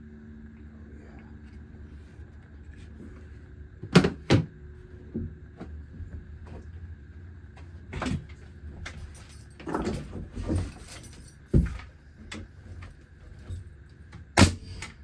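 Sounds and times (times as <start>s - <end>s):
lumber and tools clattering: 8.0s - 13.6s.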